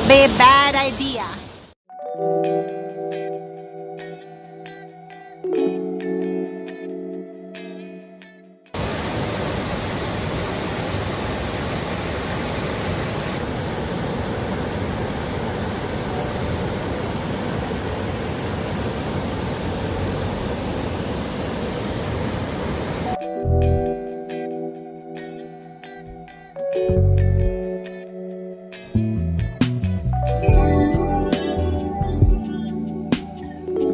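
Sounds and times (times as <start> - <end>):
soft guitar music: 1.9 - 8.8, 23.1 - 33.9
waterfall roar: 8.8 - 23.1.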